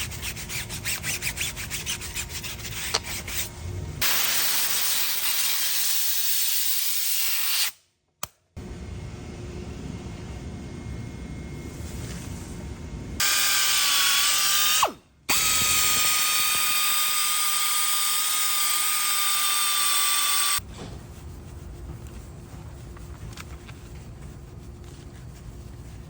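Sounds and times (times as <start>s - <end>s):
power tool whining: 13.2s - 20.6s.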